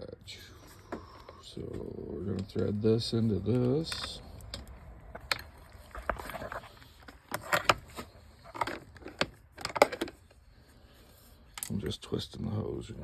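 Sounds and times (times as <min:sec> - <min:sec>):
clicks and knocks of hose fittings: 0:03.4 - 0:10.4, 0:11.5 - 0:11.9.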